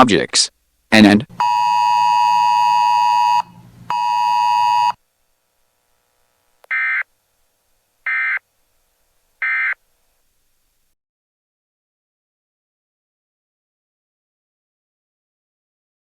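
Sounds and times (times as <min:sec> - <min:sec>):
loud buzzy steady tone: 0:00.5 - 0:10.9
short data bursts: 0:06.7 - 0:07.1, 0:08.0 - 0:08.4, 0:09.4 - 0:09.8.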